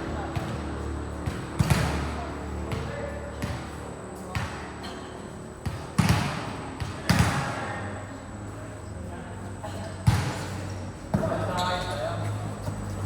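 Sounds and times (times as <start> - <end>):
volleyball slaps: 1.3 - 2.1, 5.6 - 7.6.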